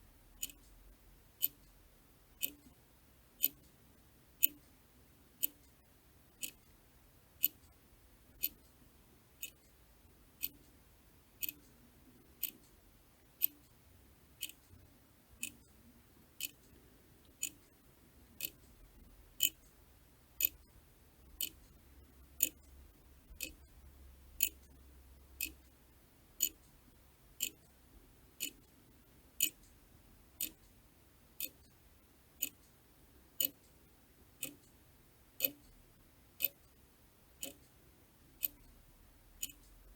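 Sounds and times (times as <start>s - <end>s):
clock ticking: 0.4s - 0.7s, 1.4s - 1.7s, 2.4s - 2.8s, 3.4s - 3.7s, 4.4s - 4.6s, 5.4s - 5.6s, 6.4s - 6.6s, 7.4s - 7.7s, 8.4s - 8.7s, 10.4s - 10.7s, 11.4s - 11.7s, 12.4s - 12.7s, 13.4s - 13.7s, 14.4s - 14.7s, 15.4s - 15.7s, 16.4s - 16.6s, 17.3s - 17.7s, 18.4s - 18.7s, 19.4s - 19.7s, 20.4s - 20.7s, 21.3s - 21.7s, 22.4s - 22.7s, 23.3s - 23.8s, 24.4s - 24.8s, 25.4s - 25.6s, 26.4s - 26.7s, 27.4s - 27.7s, 28.4s - 28.7s, 29.4s - 29.8s, 30.4s - 30.7s, 31.4s - 31.8s, 32.4s - 32.7s, 33.4s - 33.8s, 34.4s - 34.8s, 35.4s - 35.8s, 36.4s - 36.8s, 37.4s - 37.8s, 38.4s - 38.8s, 39.4s - 39.8s.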